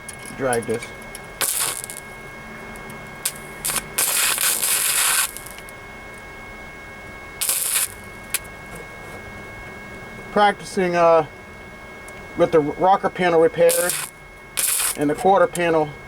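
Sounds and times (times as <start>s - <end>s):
faint steady whine: 0.0s - 16.0s
wire welder bursts: 1.4s - 2.2s, 3.2s - 5.7s, 7.4s - 8.5s, 13.7s - 15.2s.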